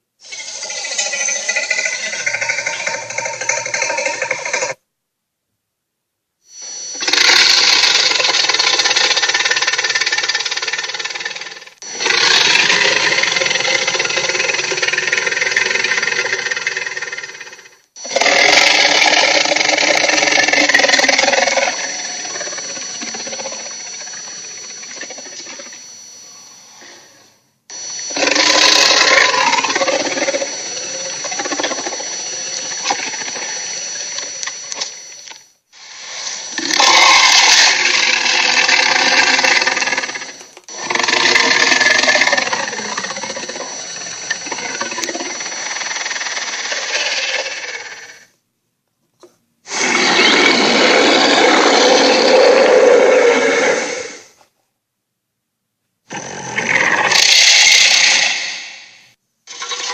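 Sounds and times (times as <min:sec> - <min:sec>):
cartoon monster growling: 0:11.9 - 0:25.8, 0:28.1 - 0:33.7, 0:36.4 - 0:48.2, 0:49.7 - 0:54.3.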